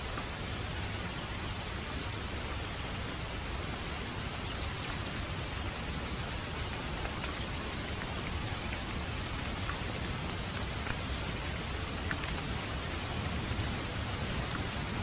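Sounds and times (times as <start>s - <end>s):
steady rain hiss: 0.0s - 15.0s
raindrop ticks: 4.4s - 15.0s.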